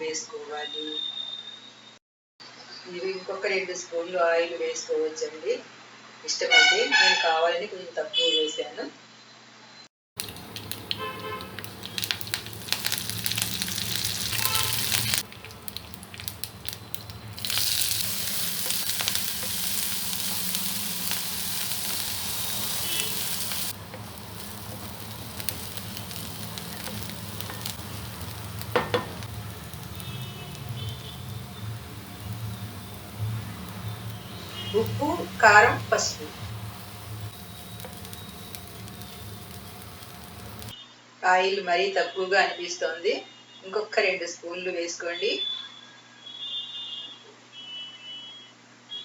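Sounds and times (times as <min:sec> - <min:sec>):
oil sizzling in a frying pan: 0:10.2 - 0:40.8.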